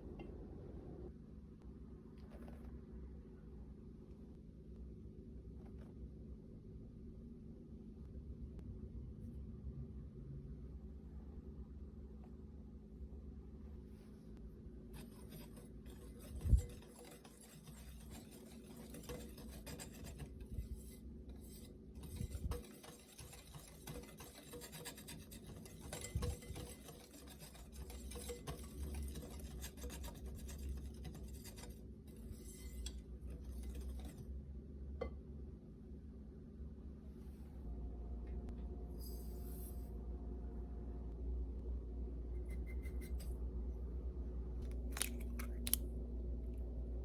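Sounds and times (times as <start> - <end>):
utensils scraping a bowl: 15.0 - 34.3.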